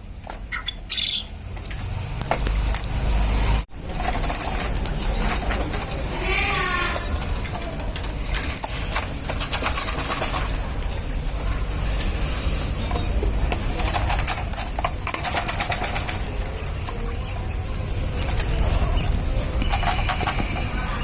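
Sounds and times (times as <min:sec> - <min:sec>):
quail clicking and rustling: 0:00.2 - 0:21.0.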